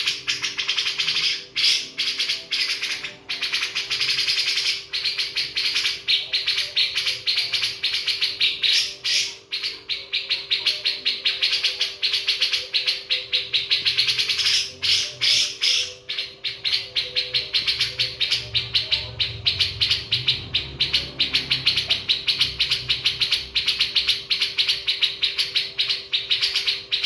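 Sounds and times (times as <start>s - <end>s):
birds chirping: 0.0s - 27.0s.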